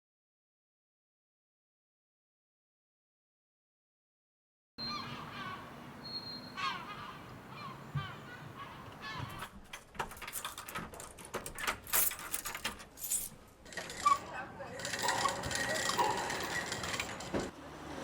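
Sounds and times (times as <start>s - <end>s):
birds chirping: 4.8s - 9.6s, 15.0s - 16.7s
sharp clicks and clinks: 9.7s - 17.5s.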